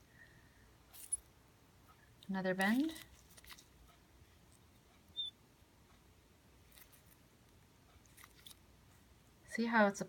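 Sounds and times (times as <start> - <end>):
high-pitched chirp: 5.1 - 5.4.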